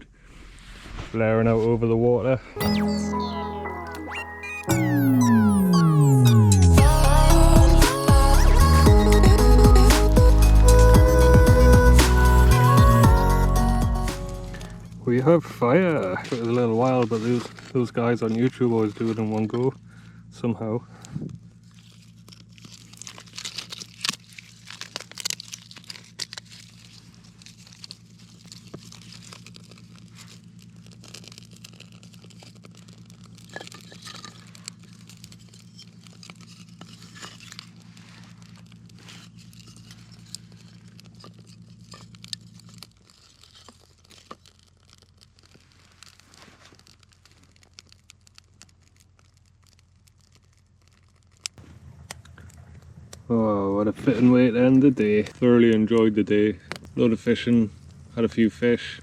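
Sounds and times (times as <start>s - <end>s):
campfire crackling and popping: 22.6s - 53.3s.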